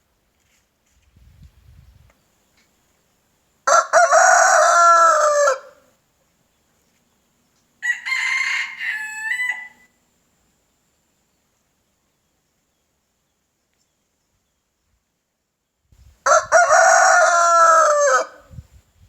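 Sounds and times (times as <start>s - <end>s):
rooster crowing: 3.7s - 5.8s, 7.8s - 9.9s, 16.3s - 18.5s.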